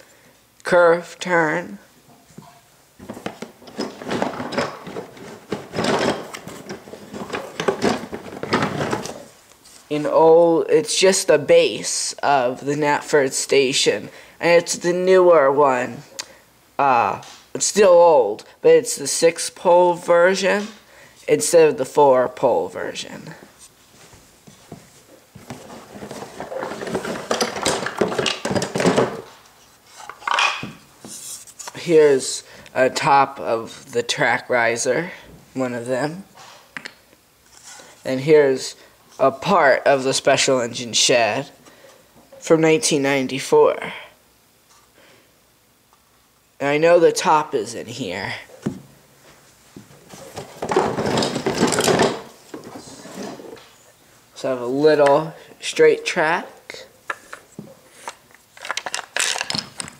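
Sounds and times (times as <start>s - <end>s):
wooden pieces clattering together: 3.0s - 9.3s, 25.5s - 30.8s, 50.1s - 52.8s, 58.5s - 59.9s
rustling: 23.2s - 31.8s.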